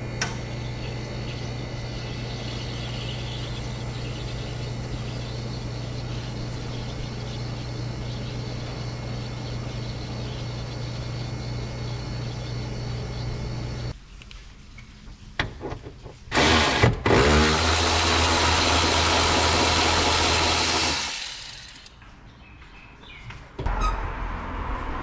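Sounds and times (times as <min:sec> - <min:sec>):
power tool whining: 0:16.3 - 0:21.9.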